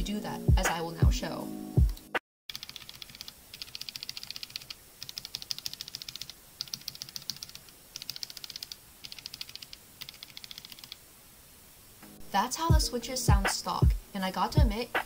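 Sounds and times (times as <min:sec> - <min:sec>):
mechanical keyboard typing: 0:02.5 - 0:11.0.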